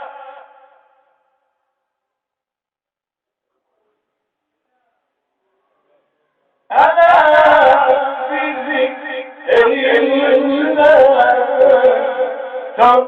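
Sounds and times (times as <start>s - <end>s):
man chanting melodically: 6.7s - 13.0s.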